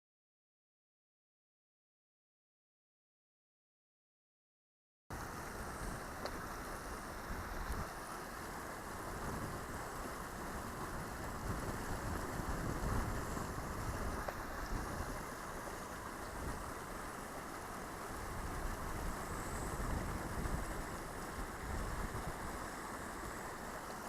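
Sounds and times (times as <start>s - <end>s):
river rushing: 5.1s - 24.0s
wind buffeting microphone: 8.9s - 17.0s, 18.1s - 23.6s.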